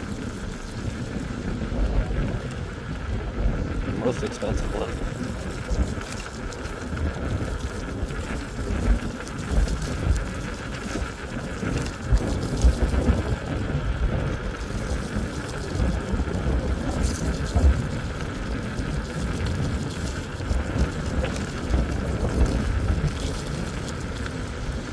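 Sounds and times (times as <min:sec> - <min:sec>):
travel noise rumble: 0:00.0 - 0:24.9
wind buffeting microphone: 0:00.0 - 0:24.9.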